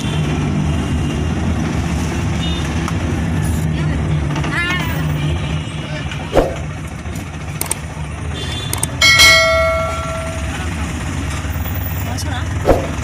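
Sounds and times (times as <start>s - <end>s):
metallic bell ring: 9.0s - 10.7s.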